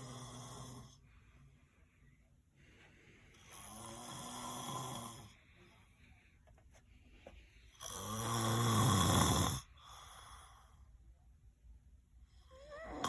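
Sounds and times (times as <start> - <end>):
person snoring: 0.0 - 1.0, 3.4 - 5.4, 7.8 - 10.6, 12.5 - 13.0
soft noisy breath: 0.0 - 11.3.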